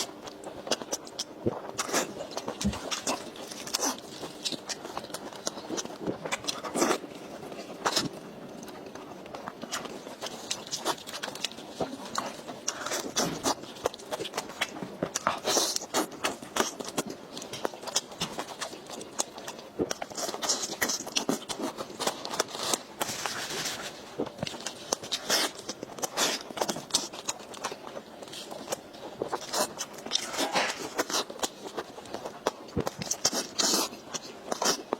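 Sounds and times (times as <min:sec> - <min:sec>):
chewing with wet clicks: 0:00.0 - 0:22.8, 0:24.2 - 0:34.9.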